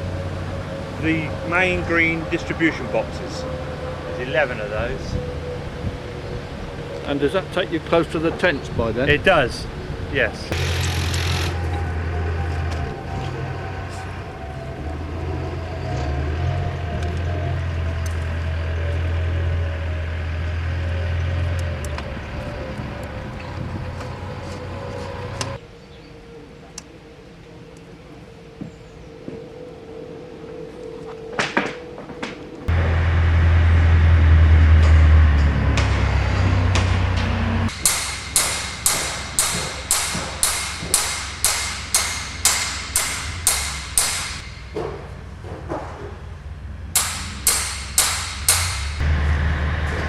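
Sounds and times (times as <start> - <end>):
engine running: 0.0 - 25.6, 32.6 - 50.0
hammer blows ringing: 34.7 - 45.0, 47.0 - 49.0.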